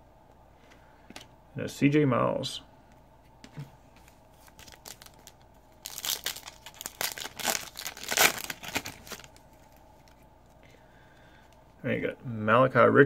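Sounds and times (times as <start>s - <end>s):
wrapper tearing and crinkling: 4.4s - 9.4s.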